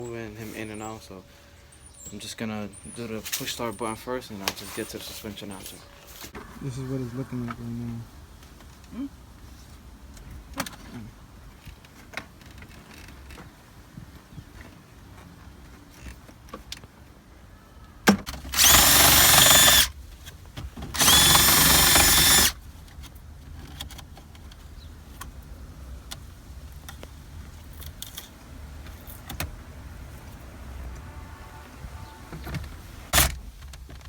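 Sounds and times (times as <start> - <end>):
power drill whining: 18.5 - 19.9, 21.0 - 22.6.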